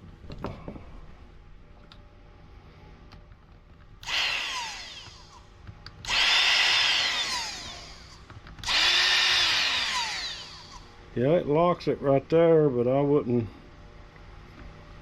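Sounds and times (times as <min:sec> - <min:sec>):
electric chainsaw motor whining: 0:04.0 - 0:10.9.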